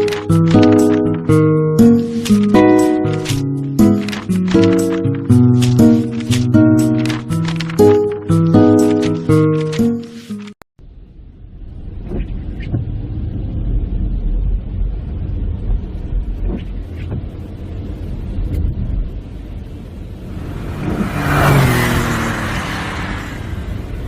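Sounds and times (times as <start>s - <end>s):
car road rumble: 10.8s - 24.0s
vehicle passing through spray: 19.8s - 24.0s.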